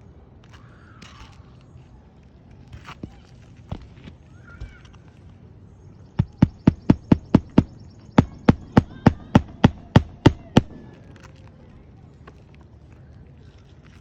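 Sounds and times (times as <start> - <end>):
hammer blows: 6.2 - 11.0.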